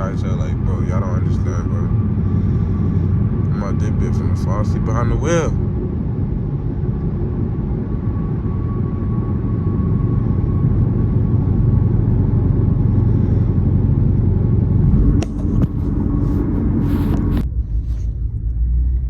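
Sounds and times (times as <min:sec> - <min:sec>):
car exhaust rumbling: 0:00.0 - 0:19.0.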